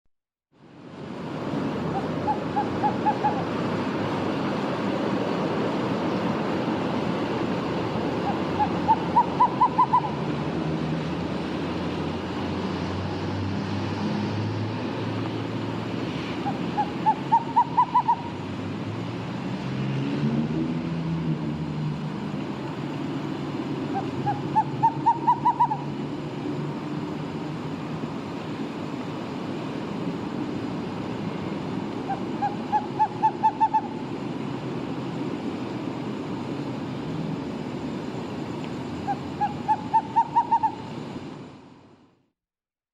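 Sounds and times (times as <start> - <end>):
owl hooting rapidly: 1.8 - 3.7, 8.1 - 10.4, 16.3 - 18.4, 23.9 - 26.1, 32.0 - 34.2, 39.0 - 41.0.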